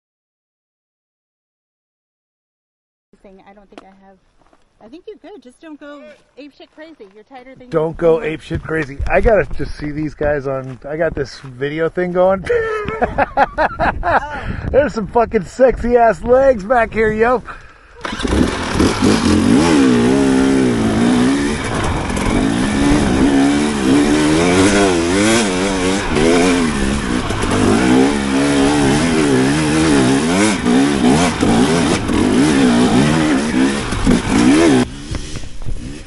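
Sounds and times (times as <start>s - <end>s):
dirt bike engine revving: 18.0s - 36.0s
steady rushing noise: 18.2s - 36.0s.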